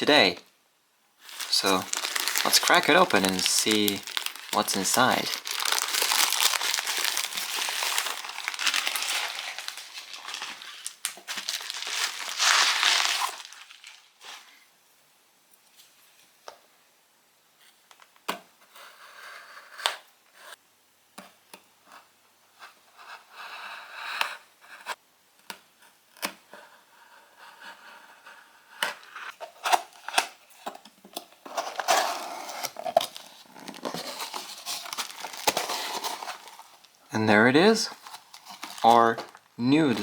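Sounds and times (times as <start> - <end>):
packaging being cut and torn: 1.3 - 14.0, 31.6 - 36.9, 38.0 - 40.0.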